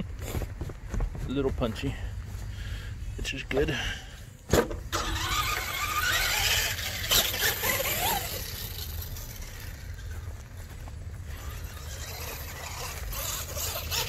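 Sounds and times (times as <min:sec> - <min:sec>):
rc truck motor whining: 0:04.6 - 0:14.0.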